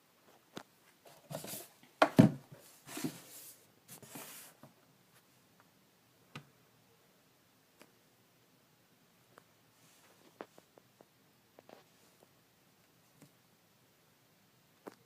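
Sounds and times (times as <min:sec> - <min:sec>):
plastic scraping and rustling: 0:01.0 - 0:04.7.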